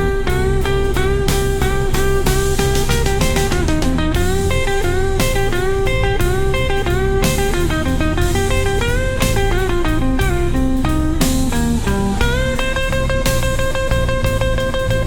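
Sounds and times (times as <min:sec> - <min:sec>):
bass: 0:00.0 - 0:15.0
electric guitar bending lead notes: 0:00.0 - 0:15.0
steady drum beat: 0:00.0 - 0:15.0.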